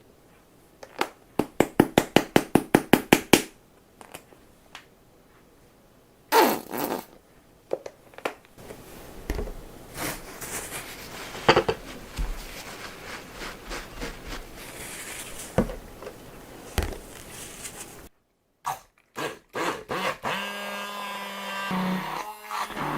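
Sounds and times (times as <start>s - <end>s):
steady low hiss: 0.0s - 18.6s
objects being handled: 7.7s - 18.1s.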